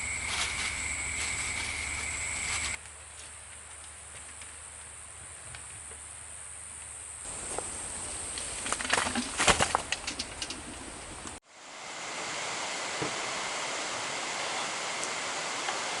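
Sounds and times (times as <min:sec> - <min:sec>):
rustles and sharp clicks: 0:00.0 - 0:04.6
faint outdoor hiss: 0:00.0 - 0:16.0.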